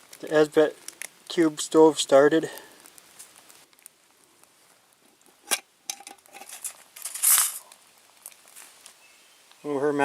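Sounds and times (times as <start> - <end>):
rustling hiss: 0.0 - 10.0
cooking gear clicking and clinking: 5.4 - 7.6.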